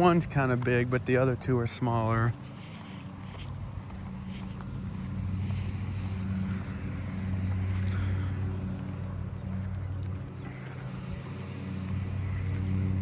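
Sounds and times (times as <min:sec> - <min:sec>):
lawnmower engine humming: 0:00.0 - 0:13.0.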